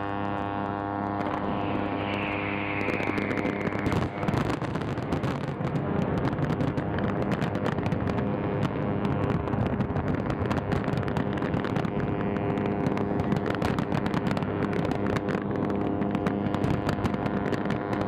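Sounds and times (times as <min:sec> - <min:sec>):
fireworks bangs and crackling: 0:00.0 - 0:18.0
falling whistle: 0:01.2 - 0:05.1.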